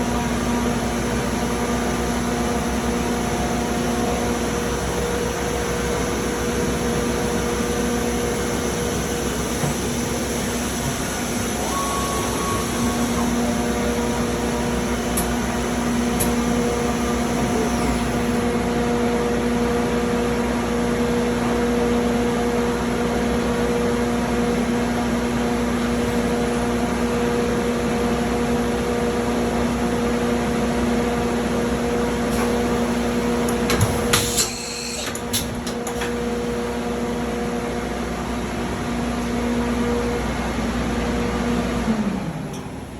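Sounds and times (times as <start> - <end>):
machine hum and hiss: 0.0 - 42.9
steady machine whining tones: 8.6 - 18.5.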